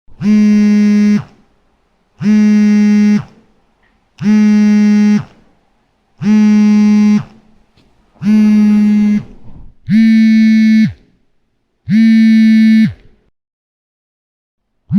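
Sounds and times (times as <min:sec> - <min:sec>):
smartphone vibrating buzz: 0:00.1 - 0:01.4, 0:02.2 - 0:03.4, 0:04.2 - 0:05.4, 0:06.2 - 0:07.4, 0:08.2 - 0:09.3, 0:09.9 - 0:11.1, 0:11.9 - 0:13.1.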